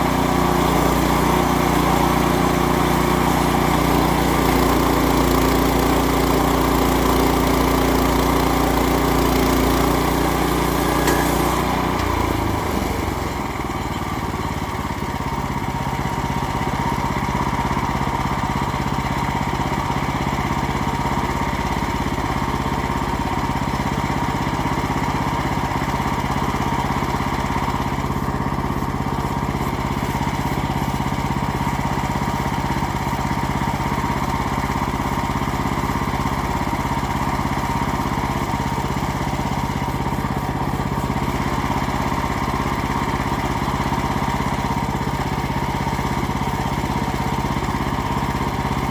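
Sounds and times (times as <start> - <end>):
sawmill engine running: 0.0 - 48.9
blade sawing through wood: 9.0 - 13.2.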